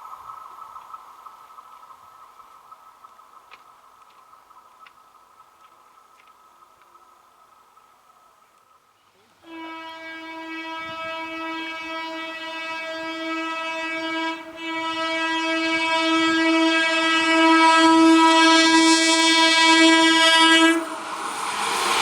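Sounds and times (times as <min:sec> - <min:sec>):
passing train rumble: 0:00.0 - 0:22.0
train air horn: 0:09.4 - 0:21.1.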